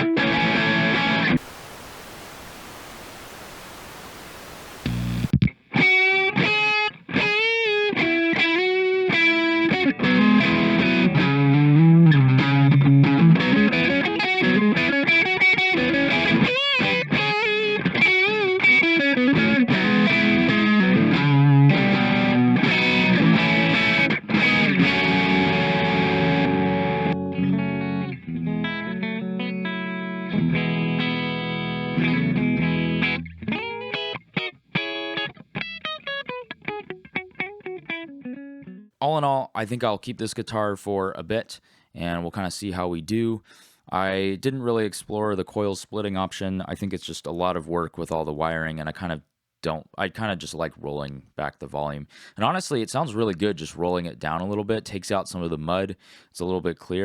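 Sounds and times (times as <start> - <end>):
distorted electric guitar rock jam: 0.0 - 38.6.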